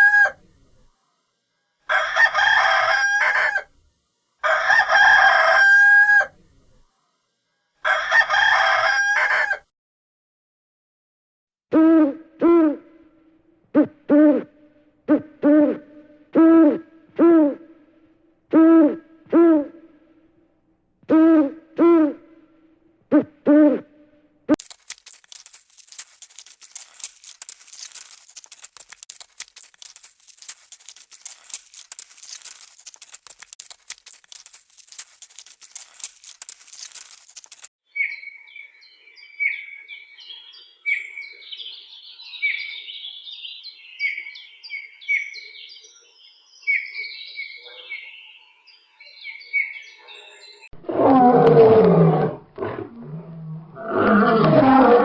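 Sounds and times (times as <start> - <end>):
rapid crackle of clicks: 24.6 - 37.7
bird chirping: 37.9 - 50.7
lion roaring: 50.8 - 55.0.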